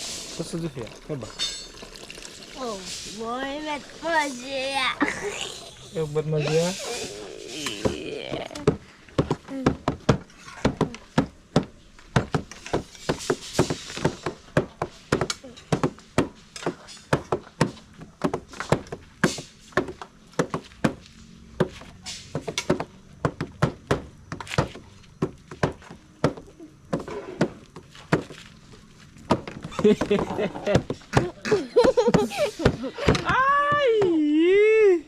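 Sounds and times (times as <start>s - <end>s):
sharp knocks on wood: 21.6s - 28.3s.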